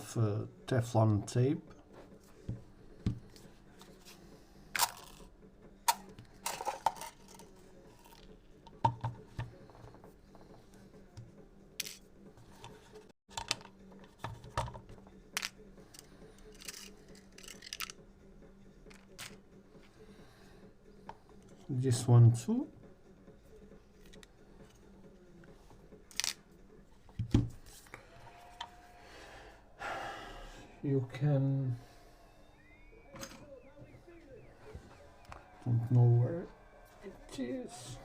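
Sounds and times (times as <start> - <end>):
small parts clicking and tapping: 15.3 - 18.0.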